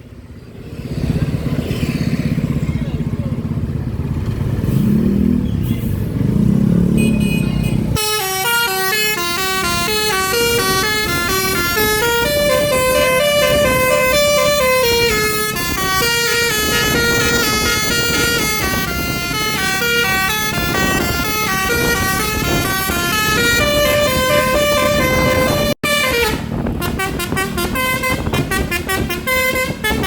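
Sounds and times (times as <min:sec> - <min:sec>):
engine and road noise: 0:00.0 - 0:30.0
bus musical horn melody: 0:07.0 - 0:30.0.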